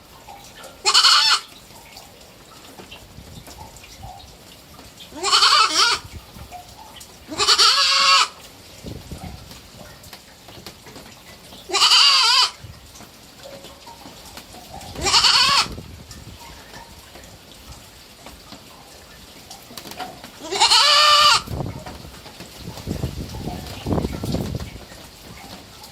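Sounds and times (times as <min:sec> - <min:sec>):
goat kid bleating: 0:00.8 - 0:01.5, 0:05.1 - 0:06.0, 0:07.3 - 0:08.4, 0:11.7 - 0:12.6, 0:15.0 - 0:15.8, 0:20.4 - 0:21.5.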